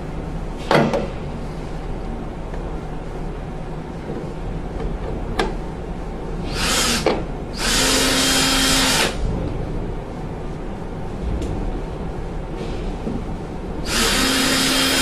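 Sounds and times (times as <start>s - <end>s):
cordless drill driving screws: 7.6s - 9.2s, 13.9s - 15.0s.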